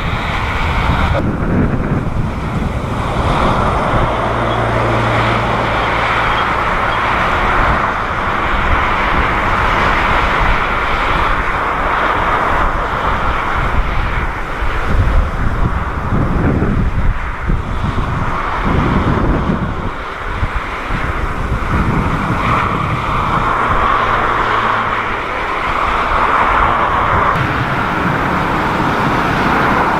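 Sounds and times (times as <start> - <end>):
jet engines running loud: 0.0 - 29.9.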